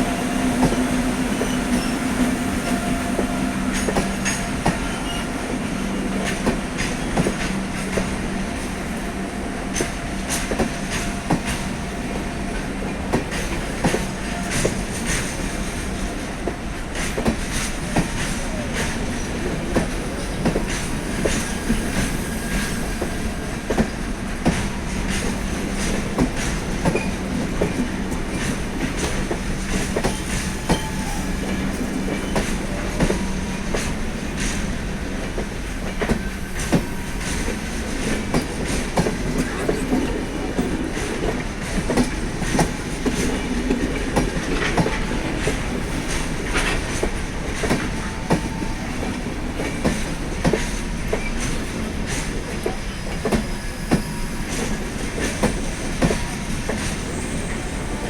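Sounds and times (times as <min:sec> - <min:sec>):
train rumbling along track: 0:00.0 - 0:58.0.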